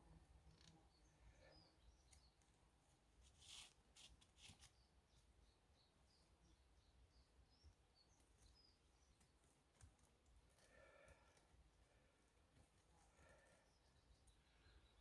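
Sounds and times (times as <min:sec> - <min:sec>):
small bird chirping: 0:00.0 - 0:10.1, 0:13.1 - 0:15.0.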